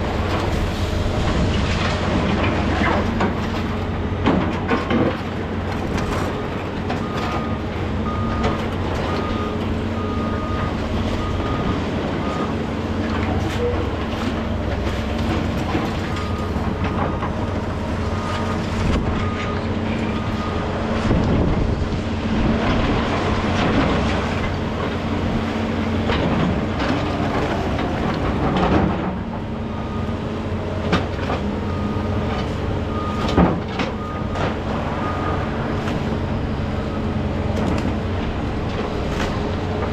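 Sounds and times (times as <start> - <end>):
machinery knocks and clanks: 0.0 - 30.0, 30.7 - 39.9
diesel construction equipment running: 0.0 - 39.9
backup alarm beeping: 7.0 - 12.7.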